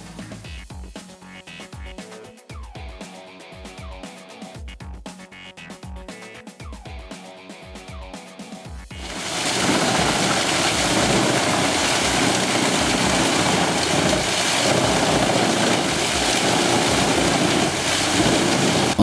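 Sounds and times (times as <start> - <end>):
wood chipper running: 9.0 - 19.0.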